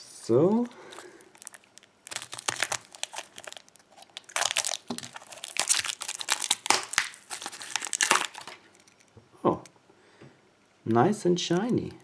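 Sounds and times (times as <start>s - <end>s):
wrapping crinkling and tearing: 0.6s - 9.0s.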